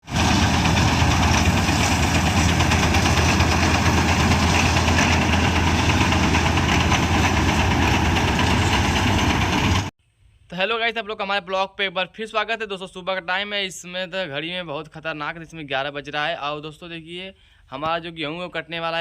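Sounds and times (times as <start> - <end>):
combine harvester running: 0.0 - 9.9.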